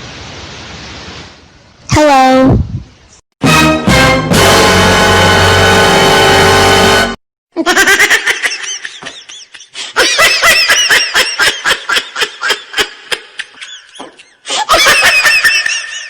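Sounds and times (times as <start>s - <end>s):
high-pitched laughter: 7.6s - 16.0s.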